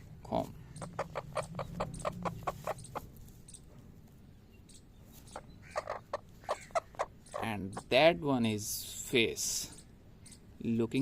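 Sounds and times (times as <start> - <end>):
chicken clucking: 0.8 - 3.2, 5.2 - 8.0.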